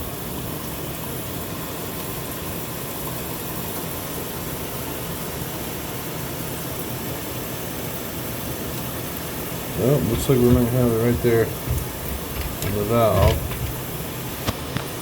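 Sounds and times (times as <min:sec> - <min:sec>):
shower water running: 0:09.4 - 0:14.5.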